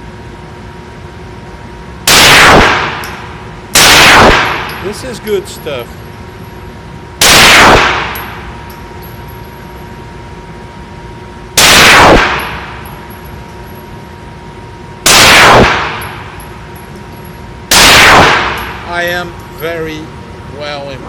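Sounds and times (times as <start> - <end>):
pistol shots: 2.1 - 3.1, 3.8 - 4.8, 7.2 - 8.4, 11.6 - 12.7, 15.0 - 16.2, 17.7 - 18.8.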